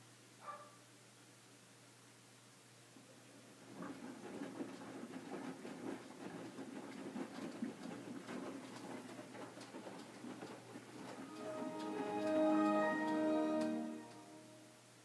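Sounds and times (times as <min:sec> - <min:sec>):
washing machine drum tumbling laundry: 0:03.7 - 0:14.3.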